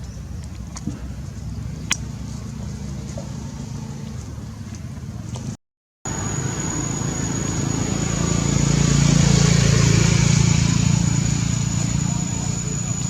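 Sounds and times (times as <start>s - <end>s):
vehicle engine passing by: 0.3s - 5.5s, 6.1s - 13.0s
thin high whine: 6.1s - 13.0s.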